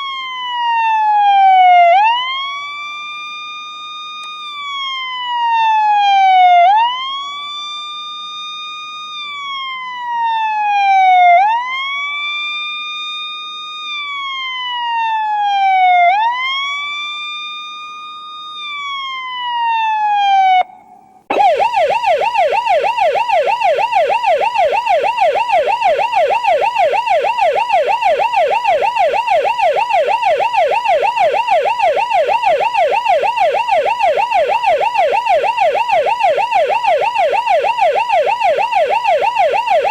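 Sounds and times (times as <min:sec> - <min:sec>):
electronic police siren: 0:21.3 - 0:39.9.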